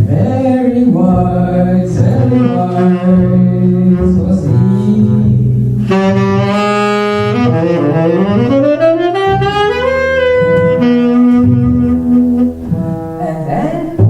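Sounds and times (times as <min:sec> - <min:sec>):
person singing: 0:00.0 - 0:06.2
double bass: 0:00.0 - 0:14.0
saxophone jazz fill: 0:00.9 - 0:14.0.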